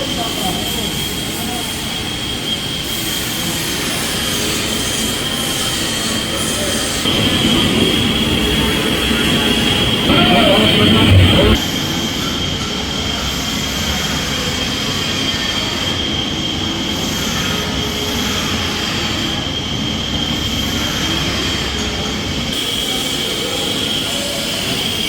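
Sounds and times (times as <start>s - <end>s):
high-pitched whine: 7.0s - 11.7s
lathe mechanical rumble: 7.1s - 11.6s.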